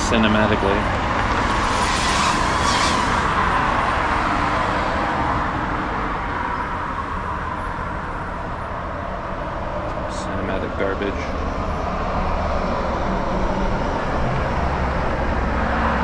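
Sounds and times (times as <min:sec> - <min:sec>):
garbage truck driving: 0:00.0 - 0:04.8.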